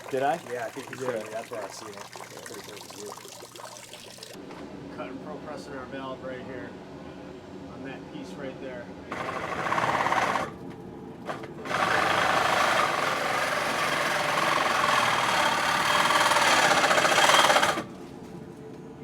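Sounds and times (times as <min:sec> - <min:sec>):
power saw cutting pipe: 0:09.1 - 0:10.6, 0:11.3 - 0:17.9.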